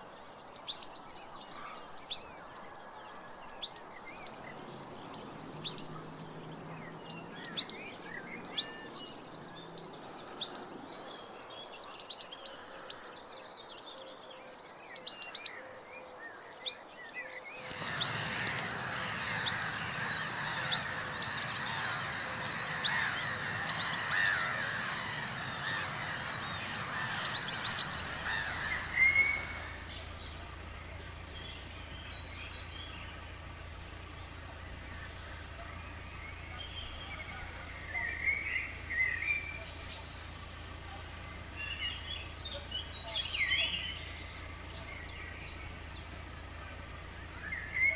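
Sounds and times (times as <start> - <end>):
birds chirping and singing: 0.0 - 47.9
low steady hum: 17.6 - 47.9.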